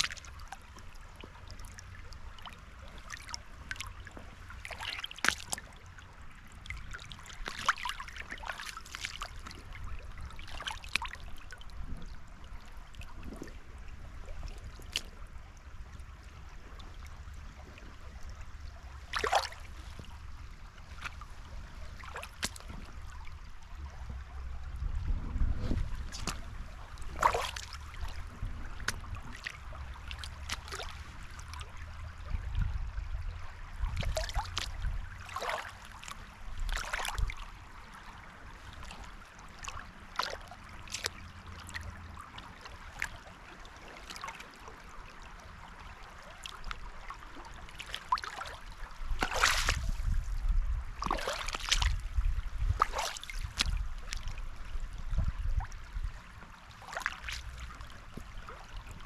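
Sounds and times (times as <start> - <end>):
river water splashing: 0.0 - 59.0
low rumble: 22.7 - 27.2.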